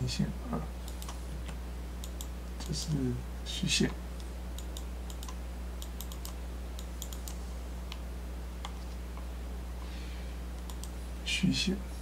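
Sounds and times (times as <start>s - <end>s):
low electrical hum: 0.0s - 12.0s
computer keyboard clicks: 0.8s - 1.2s, 4.6s - 7.4s, 10.6s - 10.9s.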